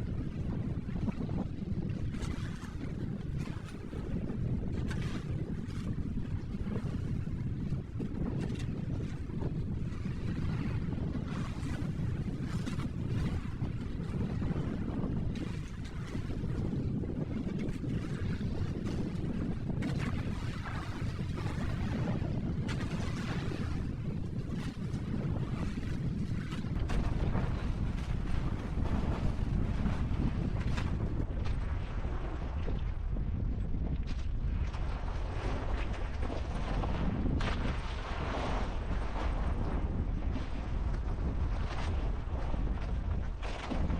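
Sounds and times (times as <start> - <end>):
wind buffeting microphone: 0.0 - 43.9
sea noise: 18.0 - 33.2, 34.3 - 43.9
steady low rumble: 19.2 - 43.9.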